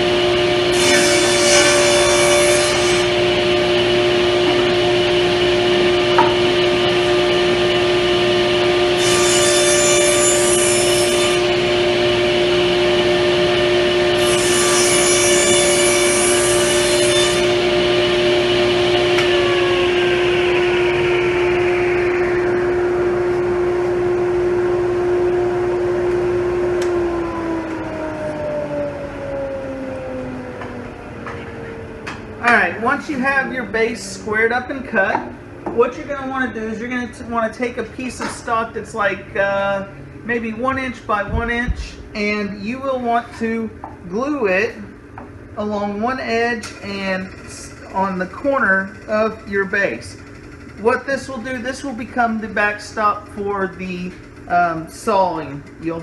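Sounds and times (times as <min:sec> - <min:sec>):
power saw cutting plywood: 0:00.0 - 0:22.4
saw winding down: 0:00.5 - 0:30.8.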